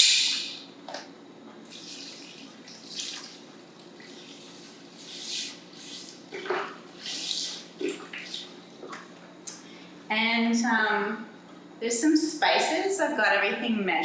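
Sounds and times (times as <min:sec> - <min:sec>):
liquid pouring and splashing: 0:01.6 - 0:09.2.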